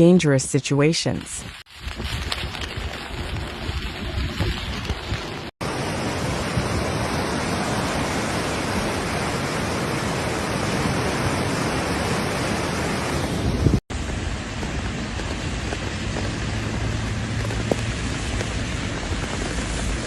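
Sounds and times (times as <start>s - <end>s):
rushing floodwater roar: 4.8s - 20.0s.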